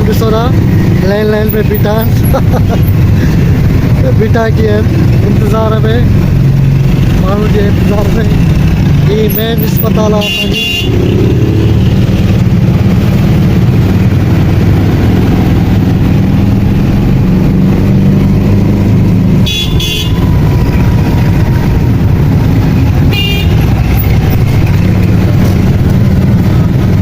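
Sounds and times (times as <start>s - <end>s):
vehicle horn tooting: 10.2s - 11.0s, 19.4s - 20.3s, 23.1s - 23.8s.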